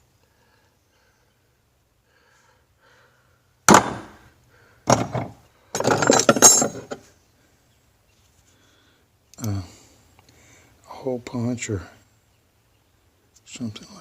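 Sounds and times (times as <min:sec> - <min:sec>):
hand tools knocking and clattering: 0:04.9 - 0:07.0.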